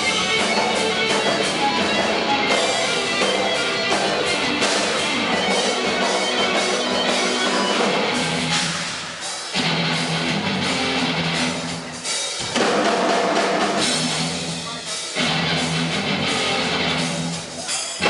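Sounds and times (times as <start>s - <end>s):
electric guitar riff: 0.0s - 12.0s, 13.8s - 17.5s
drum kit: 0.0s - 18.0s.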